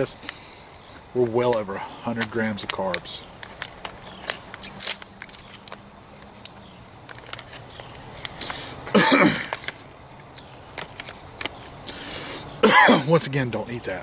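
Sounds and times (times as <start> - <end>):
handling clicks and rustles: 0.0 - 14.0
man coughing: 8.9 - 9.5, 12.6 - 13.1.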